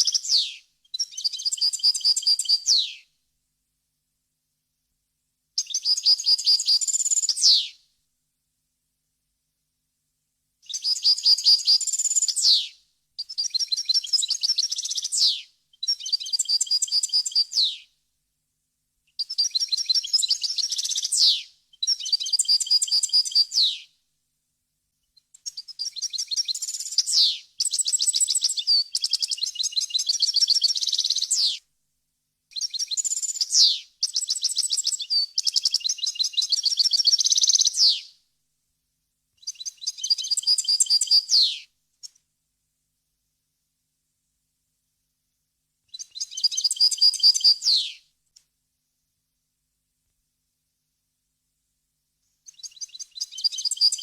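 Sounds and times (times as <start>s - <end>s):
finch twittering song: 0.0s - 3.0s, 25.4s - 31.6s, 32.5s - 38.1s, 39.4s - 41.6s, 45.9s - 48.0s, 52.5s - 54.0s.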